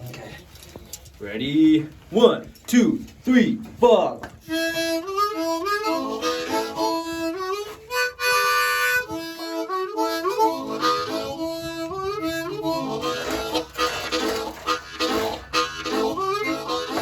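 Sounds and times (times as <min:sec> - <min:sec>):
harmonica playing a tune: 0:04.4 - 0:17.0.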